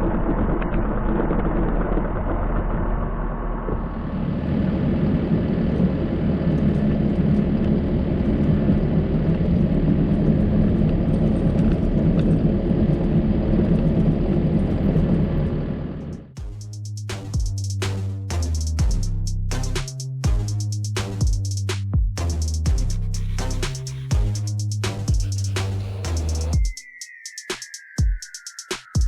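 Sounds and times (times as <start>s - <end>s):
music with drum beat: 16.4s - 29.0s.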